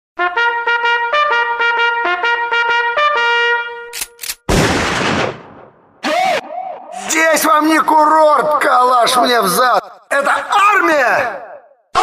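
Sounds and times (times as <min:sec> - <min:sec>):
trumpet call: 0:00.2 - 0:04.2.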